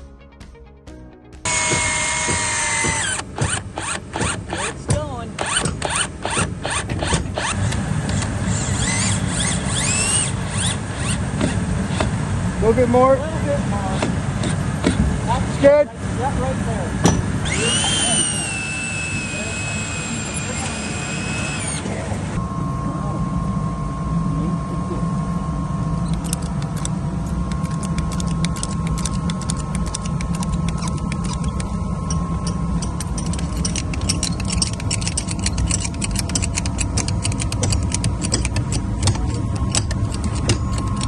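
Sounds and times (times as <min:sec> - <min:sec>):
heavy engine rumbling: 0:01.5 - 0:41.0
sharp clicks and ticks: 0:27.5 - 0:41.0.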